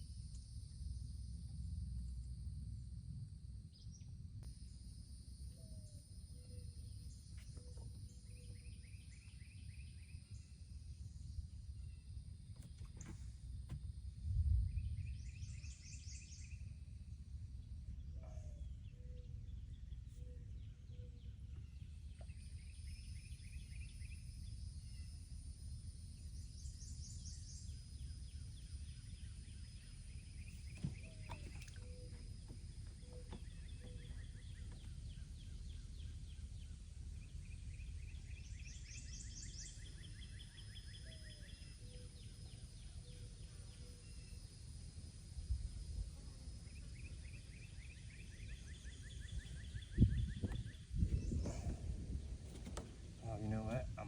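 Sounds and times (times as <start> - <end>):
low rumble: 11.0 - 20.0.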